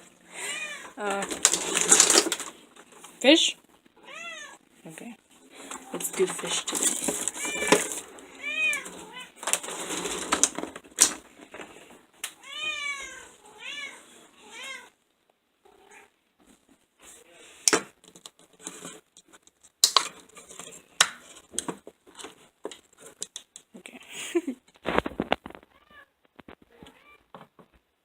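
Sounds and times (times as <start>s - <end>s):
rustling: 0.0s - 15.0s, 15.6s - 23.8s, 24.6s - 28.0s
sharp clicks and knocks: 17.7s - 23.7s.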